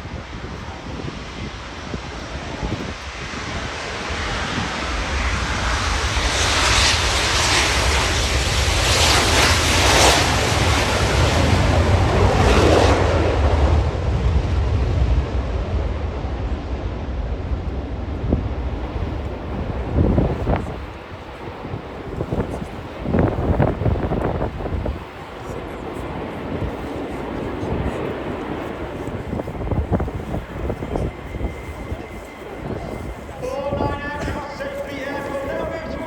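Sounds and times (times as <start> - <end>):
jet aircraft noise: 0.0 - 36.0
wind buffeting microphone: 0.0 - 36.0.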